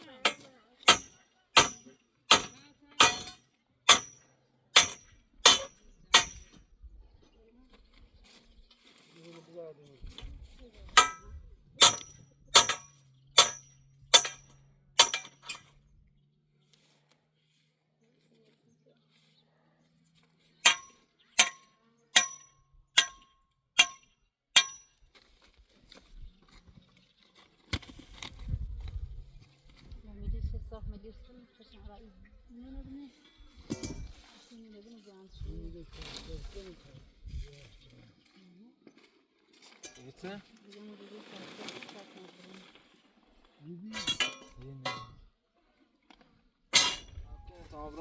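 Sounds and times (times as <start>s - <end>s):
tool striking with metallic ring: 0.2s - 4.2s, 4.8s - 6.6s, 11.0s - 15.7s, 20.6s - 25.0s, 33.7s - 34.1s, 44.0s - 45.2s, 46.8s - 47.2s.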